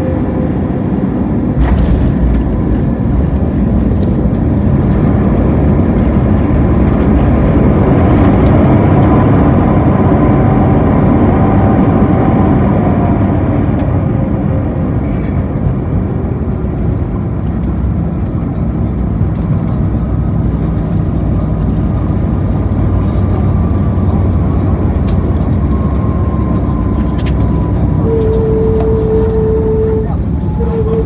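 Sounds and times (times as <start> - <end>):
airplane engine rumble: 0.0 - 31.0
faint falling whine: 1.6 - 6.7.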